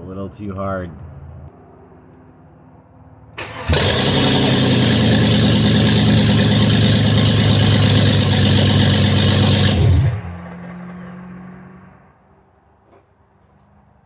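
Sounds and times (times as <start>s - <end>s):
vehicle engine at high revs: 3.4s - 12.0s.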